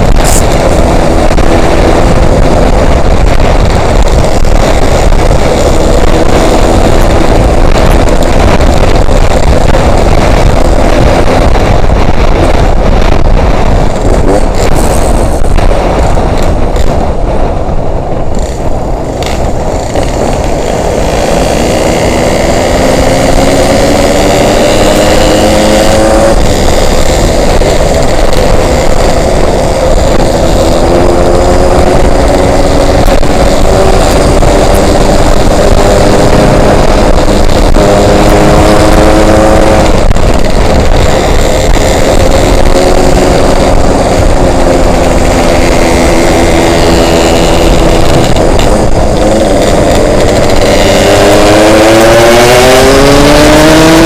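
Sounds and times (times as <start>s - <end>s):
motorcycle engine revving through gears: 0.0s - 54.0s
wind noise on microphone: 0.0s - 54.0s.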